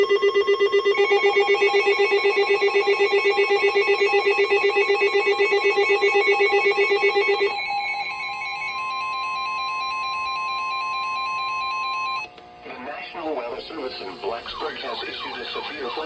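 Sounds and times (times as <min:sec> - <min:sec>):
rapid pulsing alarm beep: 0:00.0 - 0:12.3
steady warning alarm tone: 0:00.0 - 0:12.3.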